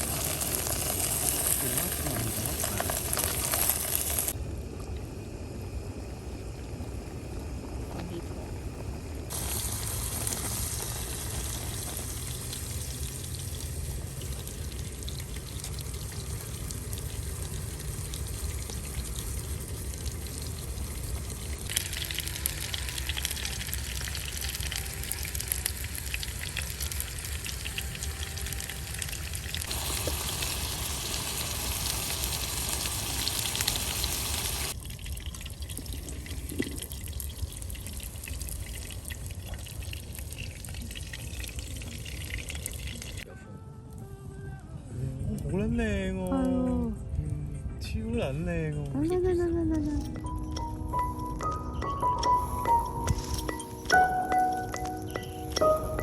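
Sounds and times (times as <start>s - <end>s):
food sizzling in a pan: 0.0s - 4.4s, 9.3s - 34.8s.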